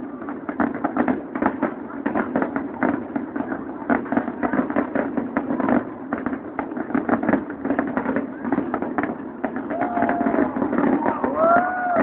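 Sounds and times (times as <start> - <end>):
fireworks bangs and crackles: 0.0 - 12.0.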